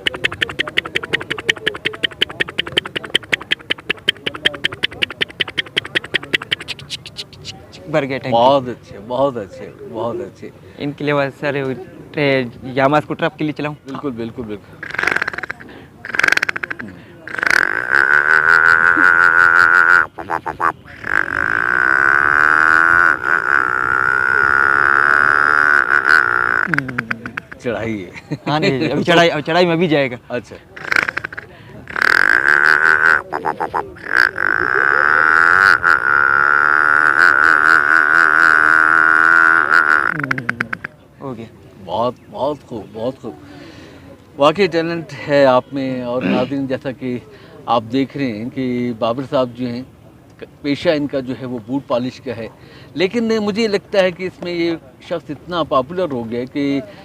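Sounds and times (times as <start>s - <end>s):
man imitating scooter engine: 0.0s - 7.6s, 16.1s - 27.5s, 31.9s - 40.9s.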